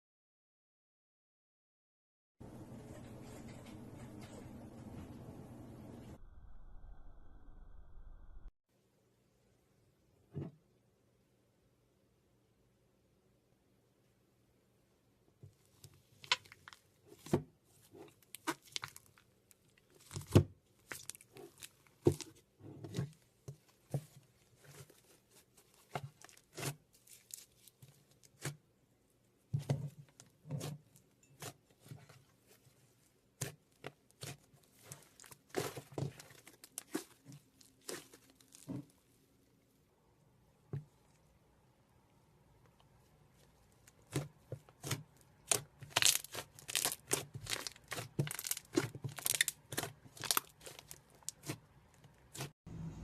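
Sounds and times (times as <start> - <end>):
slime crackling and popping: 18.3 - 22.3, 34.2 - 38.7, 43.8 - 52.5.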